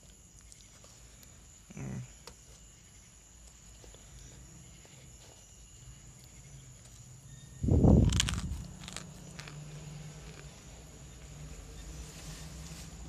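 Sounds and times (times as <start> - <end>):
loud crunch of biting: 7.7 - 10.6
person chewing: 7.9 - 10.6.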